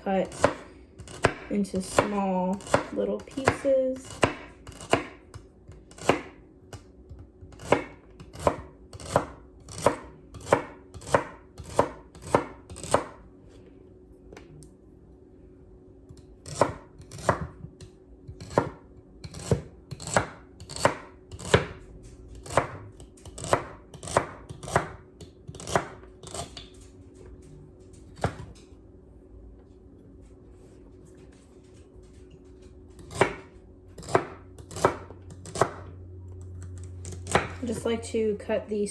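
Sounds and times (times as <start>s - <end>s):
knife chopping celery: 0.1s - 13.2s, 16.1s - 21.8s, 22.4s - 26.7s, 28.2s - 28.5s, 33.0s - 35.9s, 36.6s - 37.9s.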